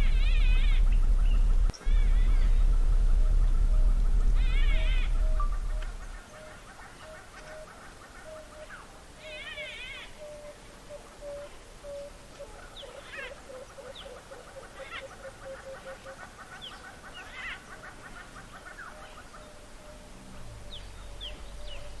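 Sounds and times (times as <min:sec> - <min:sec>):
low rumble: 0:00.0 - 0:06.3
bird trilling: 0:00.0 - 0:06.5
birds calling: 0:00.0 - 0:22.0.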